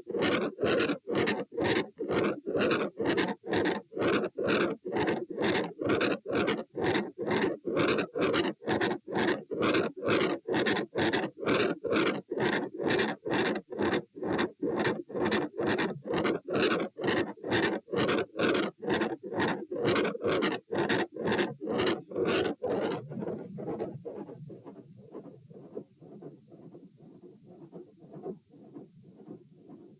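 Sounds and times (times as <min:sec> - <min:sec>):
heartbeat: 0:22.0 - 0:29.9.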